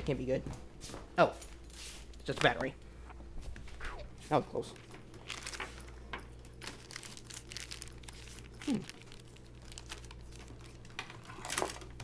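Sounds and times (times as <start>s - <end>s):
packaging crinkling and rustling: 4.6s - 12.0s.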